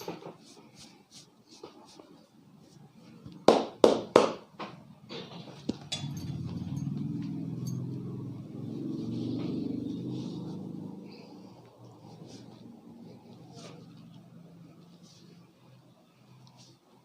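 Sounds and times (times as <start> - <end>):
low motor hum: 5.8 - 16.5.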